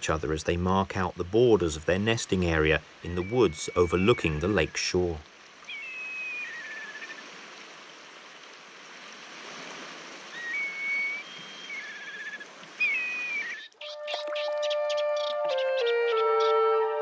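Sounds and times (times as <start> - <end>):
kites whistled calls: 3.0 - 5.1, 10.4 - 17.0
music: 14.7 - 17.0.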